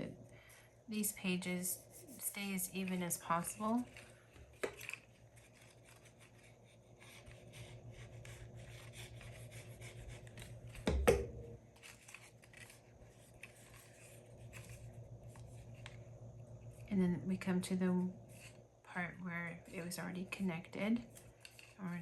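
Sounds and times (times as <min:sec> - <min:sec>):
paper pages rustling: 0:02.8 - 0:10.8, 0:11.7 - 0:16.0.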